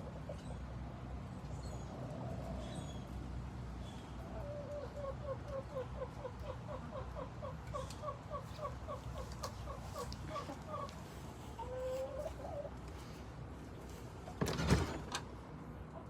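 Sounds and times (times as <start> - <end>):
hens clucking: 4.0 - 13.2.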